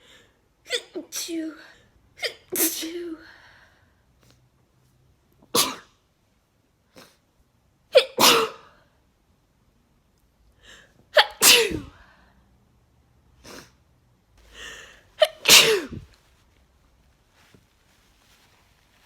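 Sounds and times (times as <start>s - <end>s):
person sneezing: 5.5s - 5.9s, 8.0s - 8.8s, 11.2s - 12.0s, 14.5s - 16.1s.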